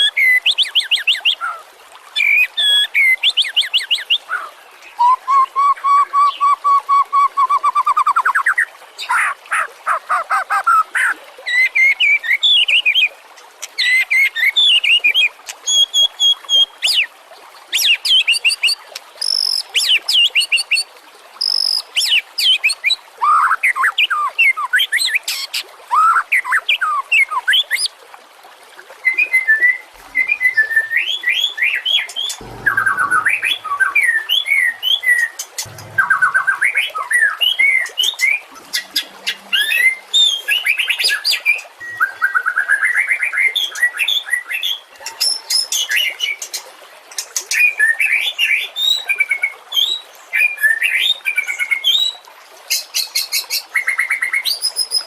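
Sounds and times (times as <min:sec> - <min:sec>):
bird singing whistles and trills: 0:02.2 - 0:08.5.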